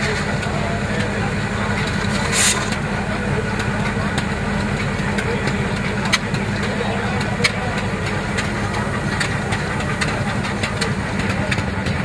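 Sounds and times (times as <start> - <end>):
steam road roller droning: 0.0 - 12.0
short sharp steam hiss: 2.1 - 2.8.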